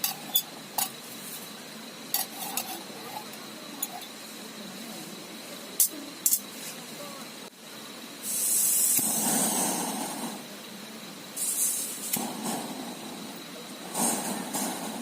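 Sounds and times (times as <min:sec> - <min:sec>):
loud hiss: 0:00.0 - 0:15.0.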